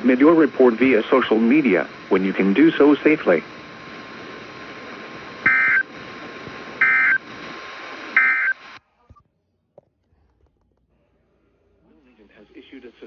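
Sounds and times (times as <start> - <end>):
broadcast hiss: 0.0 - 9.2, 11.8 - 13.0
two-tone data bursts: 5.4 - 5.9, 6.8 - 7.2, 8.1 - 8.6.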